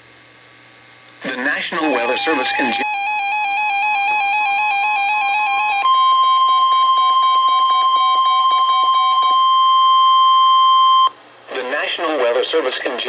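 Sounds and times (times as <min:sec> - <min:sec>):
alarm warbling between two pitches: 0:01.8 - 0:10.1
steady alarm tone: 0:01.8 - 0:11.2.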